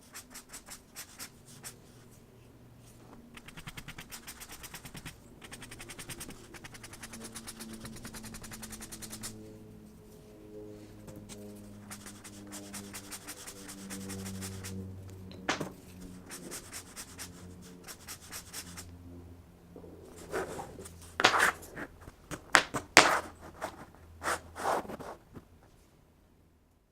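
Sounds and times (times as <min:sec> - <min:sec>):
pen scratching on paper: 0:00.0 - 0:02.0, 0:03.3 - 0:09.4, 0:11.2 - 0:14.8, 0:15.6 - 0:18.9, 0:20.0 - 0:25.2
soft background music: 0:07.5 - 0:21.1.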